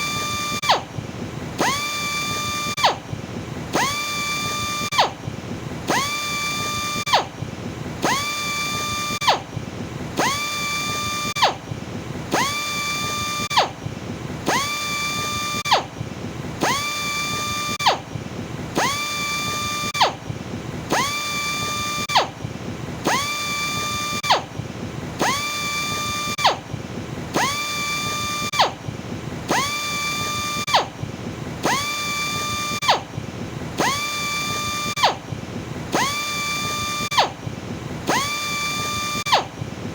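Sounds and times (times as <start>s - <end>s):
power sander whining in bursts: 1.6s - 2.9s, 3.7s - 5.1s, 5.9s - 7.3s, 8.0s - 9.4s, 10.2s - 11.5s, 12.3s - 13.7s, 14.5s - 15.8s, 16.6s - 17.9s, 18.8s - 20.0s, 23.1s - 24.4s, 27.3s - 28.7s, 29.5s - 30.8s, 31.6s - 33.0s, 33.8s - 35.1s, 35.9s - 37.3s, 38.1s - 39.4s.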